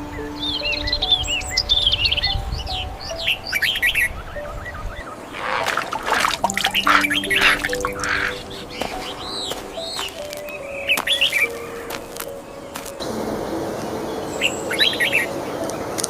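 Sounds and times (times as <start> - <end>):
birds chirping: 0.0 - 16.0
soft background music: 0.0 - 16.0
harsh bird call: 5.0 - 10.2.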